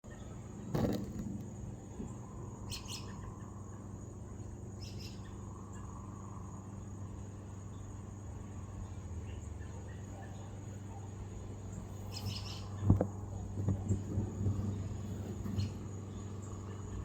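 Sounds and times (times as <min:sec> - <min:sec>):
steady low hum: 0:00.0 - 0:17.0
bird chirping: 0:02.7 - 0:03.8, 0:04.7 - 0:05.9, 0:11.7 - 0:17.0.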